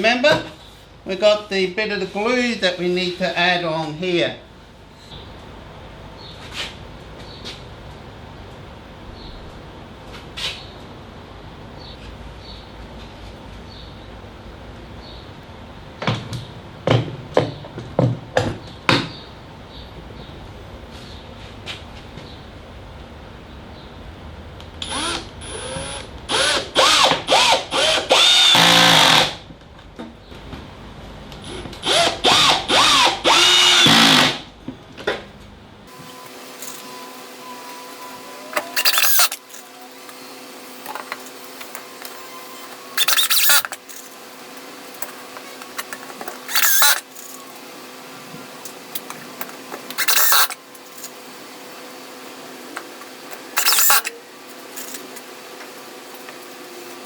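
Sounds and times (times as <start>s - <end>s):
cordless drill driving screws: 24.8s - 29.4s, 31.5s - 34.4s, 36.0s - 40.3s, 41.0s - 44.1s, 45.6s - 47.5s, 49.9s - 51.1s, 53.6s - 54.1s.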